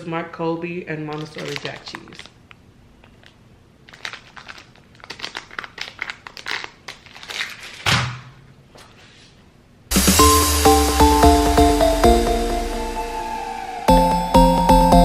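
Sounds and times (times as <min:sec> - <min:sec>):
plastic packaging crinkling: 0:01.1 - 0:07.9
electronic music: 0:09.9 - 0:15.0.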